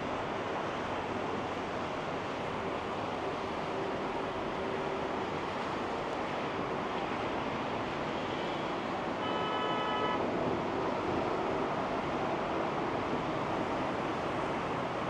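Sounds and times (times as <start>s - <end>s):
wind: 0.0s - 15.0s
vehicle horn: 9.2s - 10.2s.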